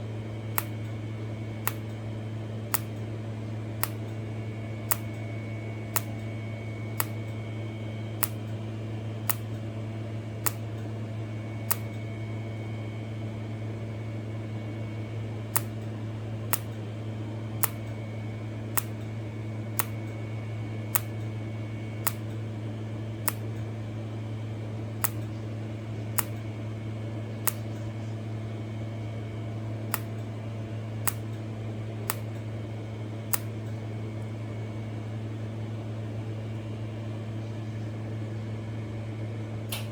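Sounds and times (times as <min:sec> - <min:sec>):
welding equipment hum: 0:00.0 - 0:38.2
spot welder arc clicks: 0:00.5 - 0:03.1, 0:03.8 - 0:07.4, 0:08.2 - 0:08.6, 0:09.2 - 0:09.7, 0:10.4 - 0:11.0, 0:11.6 - 0:12.1, 0:15.4 - 0:21.4, 0:22.0 - 0:22.5, 0:23.1 - 0:23.8, 0:25.0 - 0:26.6, 0:27.3 - 0:27.9, 0:29.8 - 0:30.4, 0:31.0 - 0:34.3, 0:39.7 - 0:39.9.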